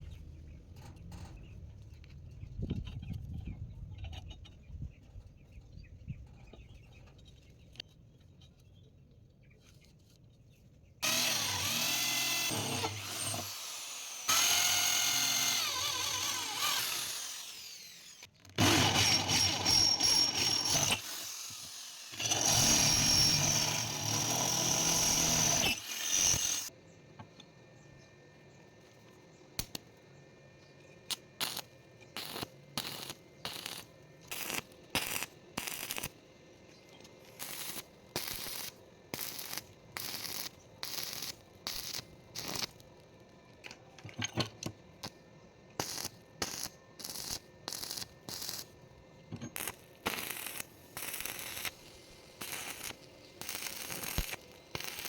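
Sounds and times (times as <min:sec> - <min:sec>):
power tool motor running: 0:11.0 - 0:26.7.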